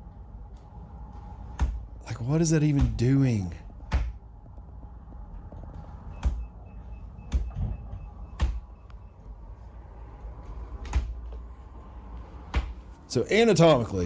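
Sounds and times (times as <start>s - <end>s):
steady low rumble: 0.0s - 14.0s
sharp knocks: 2.7s - 3.2s, 3.8s - 4.3s.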